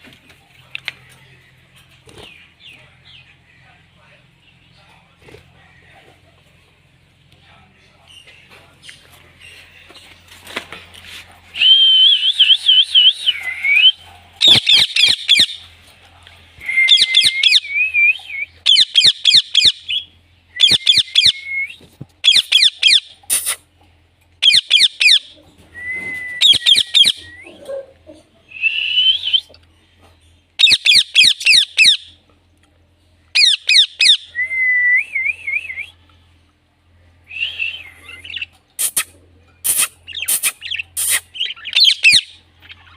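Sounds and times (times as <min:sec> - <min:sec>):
parakeet shrill chirps: 0:14.4 - 0:15.6, 0:20.6 - 0:21.3, 0:24.4 - 0:25.2, 0:30.6 - 0:32.0, 0:33.4 - 0:34.3, 0:39.7 - 0:42.9.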